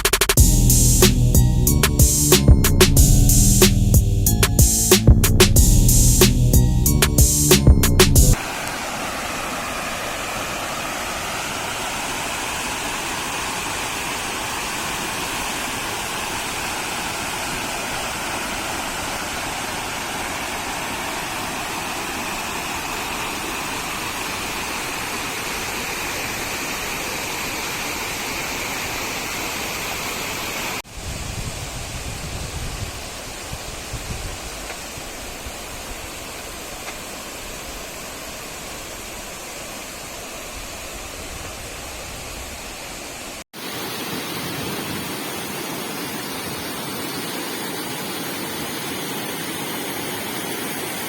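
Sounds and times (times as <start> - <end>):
waterfall roaring: 8.3 - 30.8, 33.2 - 51.0.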